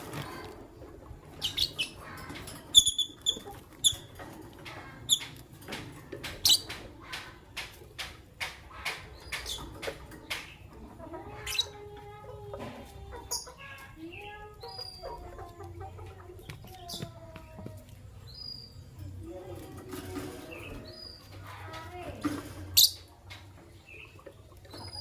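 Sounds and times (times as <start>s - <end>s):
lovebirds chirping: 1.3s - 5.4s, 13.1s - 25.0s.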